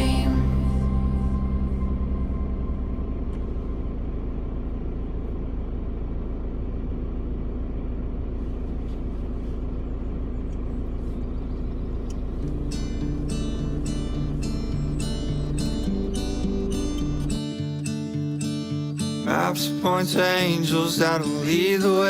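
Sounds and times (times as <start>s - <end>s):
car engine and road noise: 0.0s - 22.0s
acoustic guitar strumming: 12.4s - 22.0s.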